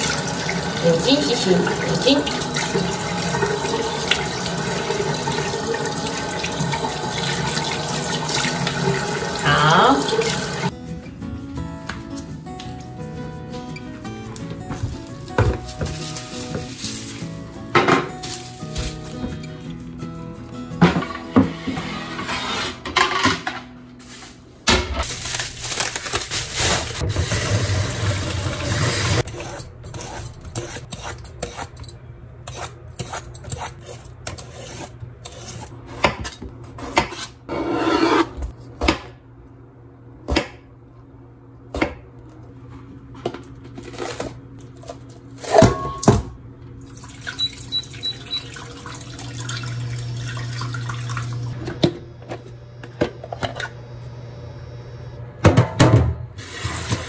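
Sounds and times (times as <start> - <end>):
water running from tap: 0.0 - 10.7, 27.3 - 29.2, 46.8 - 51.6.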